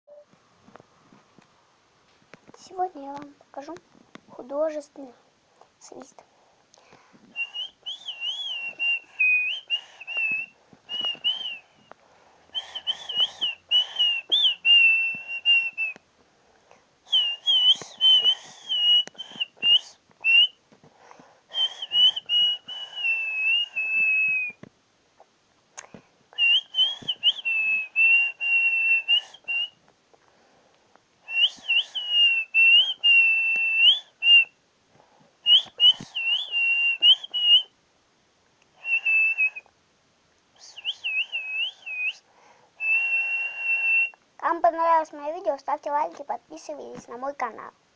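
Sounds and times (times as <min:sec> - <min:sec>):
person whistling melody: 0:07.4 - 0:11.9, 0:12.6 - 0:16.0, 0:17.1 - 0:20.6, 0:21.5 - 0:24.6, 0:26.4 - 0:29.8, 0:31.3 - 0:34.5, 0:35.5 - 0:37.7, 0:38.8 - 0:39.7, 0:40.6 - 0:42.2, 0:42.8 - 0:44.2.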